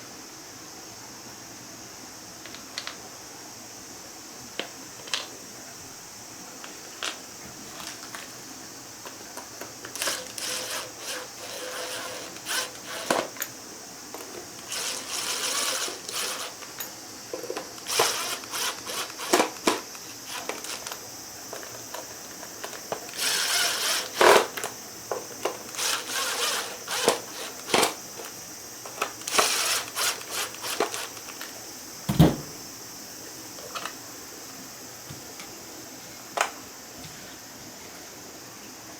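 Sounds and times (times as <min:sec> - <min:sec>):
loud knock: 0:32.1 - 0:32.6.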